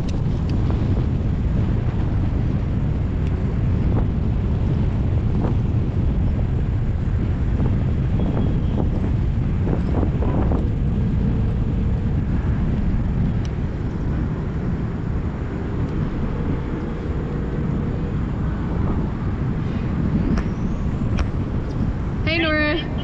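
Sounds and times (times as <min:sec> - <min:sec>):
strong wind on microphone: 0:00.0 - 0:23.0.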